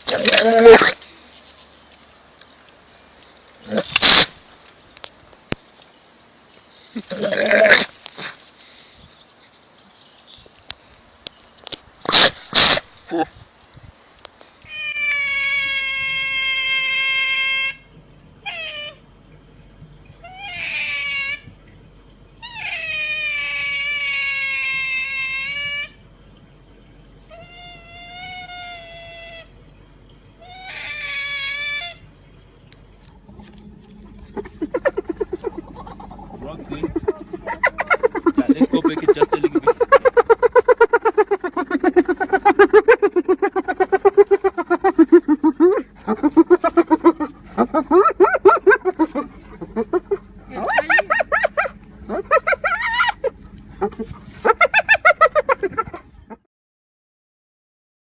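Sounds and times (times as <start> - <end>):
animal calling: 0.0 - 1.0, 14.7 - 19.2, 19.9 - 26.1, 27.2 - 29.6, 30.3 - 32.4, 33.0 - 56.5.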